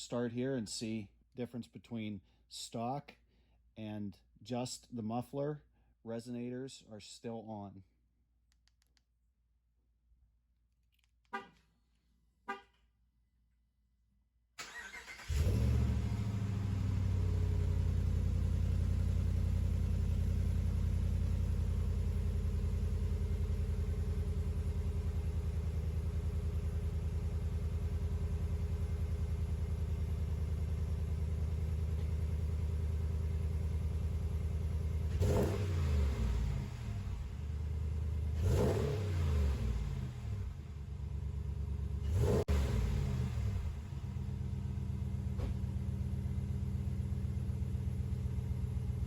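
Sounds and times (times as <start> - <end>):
pickup truck exhaust idling and revving: 15.3 - 49.0.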